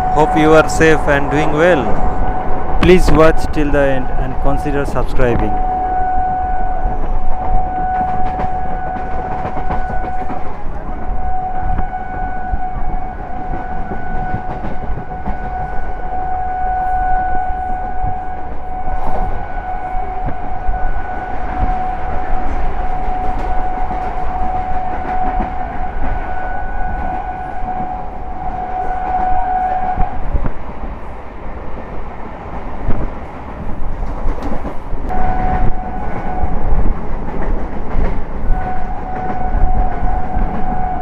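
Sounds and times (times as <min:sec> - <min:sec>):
train horn blast: 0:00.0 - 0:30.4, 0:35.1 - 0:37.0, 0:38.4 - 0:41.0
train wheels clattering on track: 0:07.0 - 0:12.0, 0:12.6 - 0:16.1, 0:20.2 - 0:31.0, 0:31.6 - 0:41.0.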